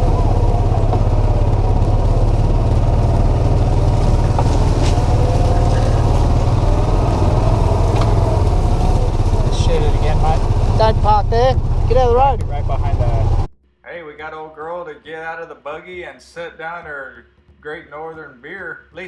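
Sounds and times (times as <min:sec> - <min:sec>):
vehicle engine rumbling: 0:00.0 - 0:13.5.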